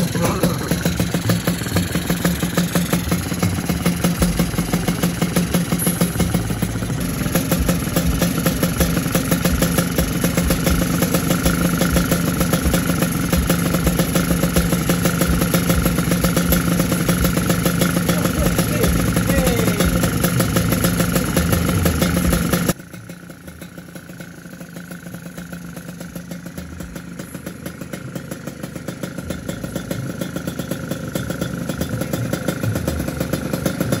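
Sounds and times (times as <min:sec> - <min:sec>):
two-stroke motorcycle engine idling: 0:00.0 - 0:34.0.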